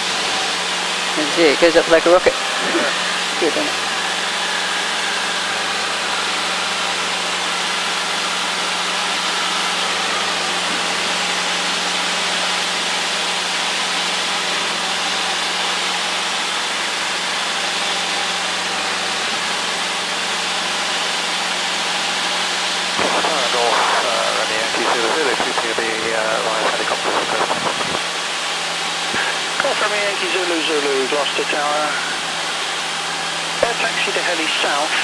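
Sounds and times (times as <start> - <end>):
aircraft engine and propeller droning: 0.0 - 35.0
hiss of air and cabin noise: 23.0 - 28.0.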